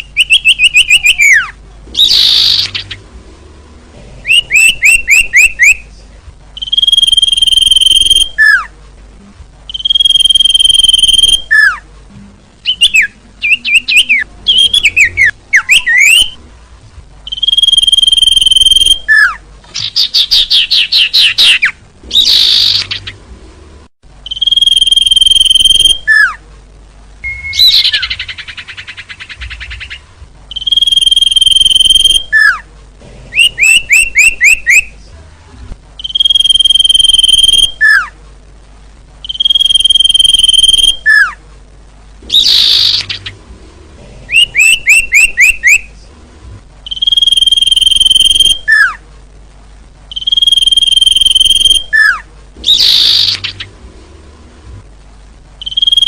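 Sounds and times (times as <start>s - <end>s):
songbirds calling: 0.0s - 3.2s, 4.1s - 8.8s, 9.6s - 11.9s, 12.5s - 16.4s, 17.2s - 23.4s, 24.2s - 26.4s, 27.2s - 32.7s, 33.3s - 35.1s, 36.0s - 38.2s, 39.2s - 41.4s, 42.2s - 43.5s, 44.2s - 46.1s, 46.8s - 49.0s, 50.1s - 53.8s, 55.6s - 56.0s.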